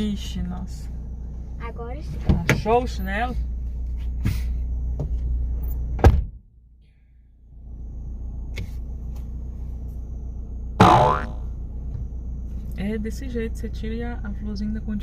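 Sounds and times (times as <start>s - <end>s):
vehicle rumble from inside: 0.0s - 15.0s
sharp knock: 10.8s - 11.4s.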